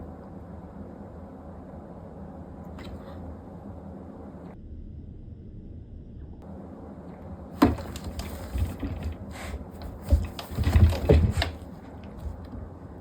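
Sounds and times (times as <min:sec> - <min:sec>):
bumps and scrabbling: 0:07.6 - 0:13.0
cats fighting: 0:07.6 - 0:13.0.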